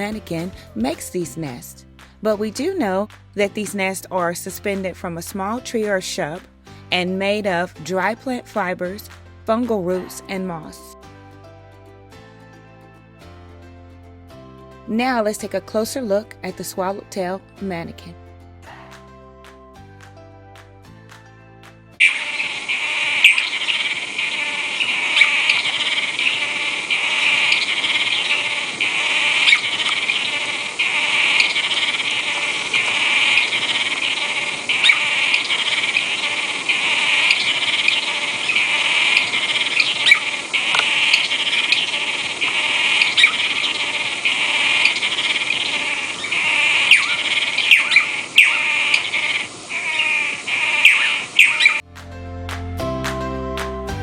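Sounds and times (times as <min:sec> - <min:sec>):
bird chirps and calls: 0:22.0 - 0:51.8
high chorus of insects: 0:22.0 - 0:51.8.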